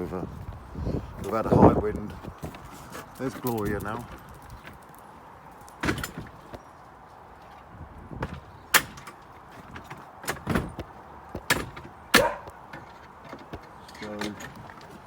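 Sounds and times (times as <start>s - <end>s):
knocks and clunks: 5.8s - 6.6s, 8.2s - 15.0s.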